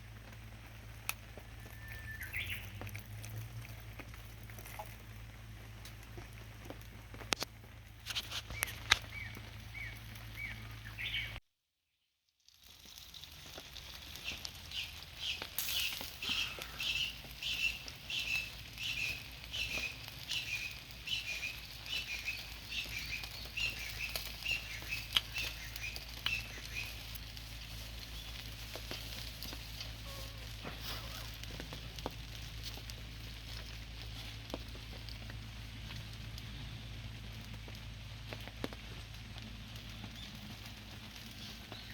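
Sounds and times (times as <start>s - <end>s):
bird chirping: 1.5s - 2.9s, 8.3s - 11.4s, 14.2s - 27.0s.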